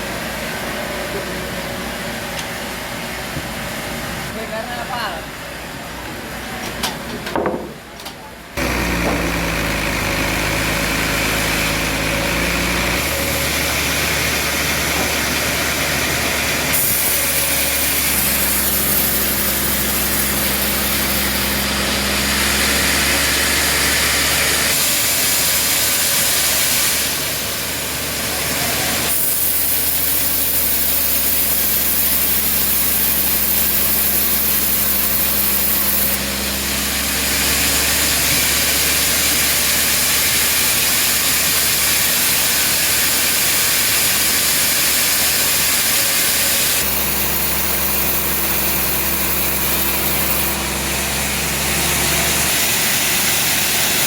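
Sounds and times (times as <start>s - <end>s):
saw blade cutting log: 8.6s - 54.0s
sawmill engine droning: 8.6s - 54.0s.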